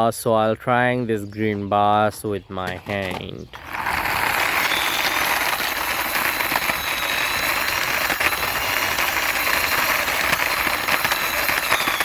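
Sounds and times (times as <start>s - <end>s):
toy wheels rolling on floor: 2.6s - 12.0s.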